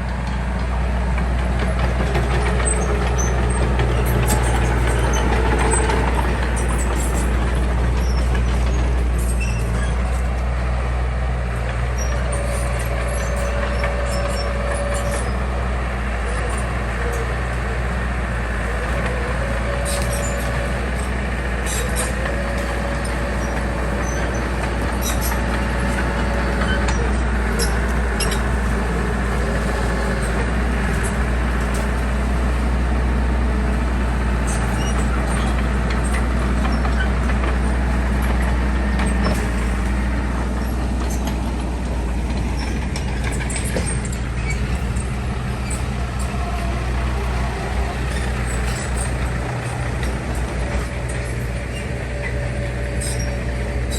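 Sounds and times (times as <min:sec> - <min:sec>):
heavy diesel engine running: 0:00.0 - 0:53.9.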